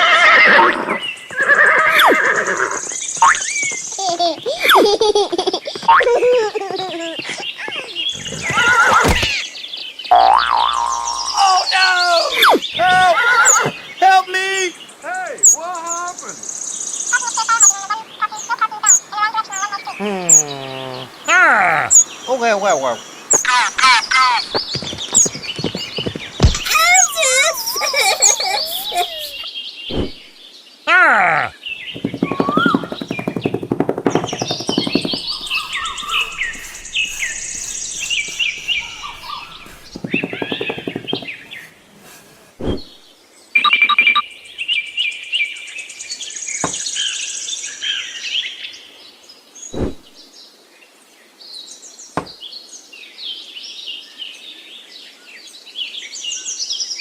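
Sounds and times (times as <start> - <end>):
birds chirping and twittering: 2.0 - 30.8, 31.6 - 43.5.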